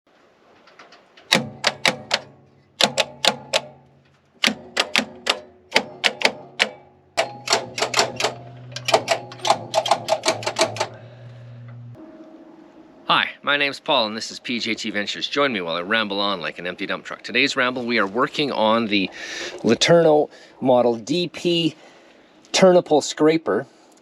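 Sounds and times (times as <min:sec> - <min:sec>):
sharp clicking strikes: 0:01.2 - 0:12.4
ringing tone: 0:11.0 - 0:13.8.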